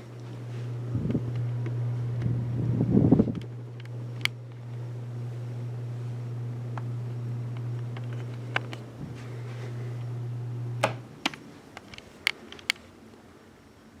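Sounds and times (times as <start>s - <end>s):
ceiling fan motor humming: 0.0s - 13.9s
fan switch click: 3.2s - 4.8s, 10.7s - 11.4s.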